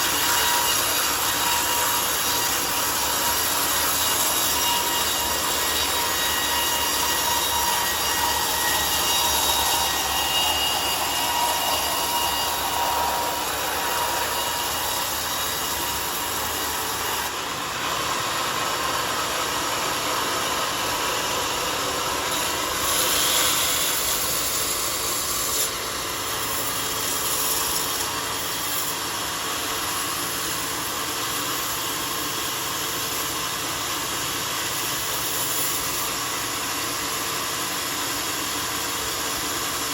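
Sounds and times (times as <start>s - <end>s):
saw blade cutting through log: 0.0s - 39.9s
sawmill motor running: 0.0s - 39.9s.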